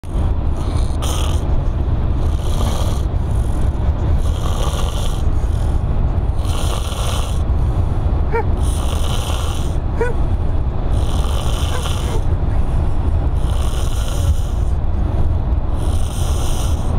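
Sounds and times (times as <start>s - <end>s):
man snoring loudly: 0.6s - 1.4s, 2.2s - 3.1s, 4.2s - 5.2s, 6.4s - 7.4s, 8.3s - 10.1s, 10.9s - 12.2s, 13.4s - 14.6s.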